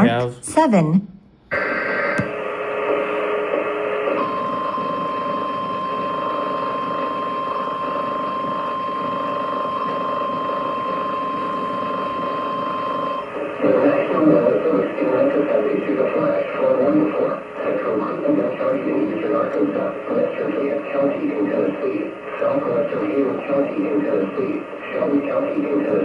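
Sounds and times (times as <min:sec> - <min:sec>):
radio receiver static: 0:01.5 - 0:12.7, 0:13.3 - 0:26.0
steady high alarm beep: 0:04.2 - 0:13.3.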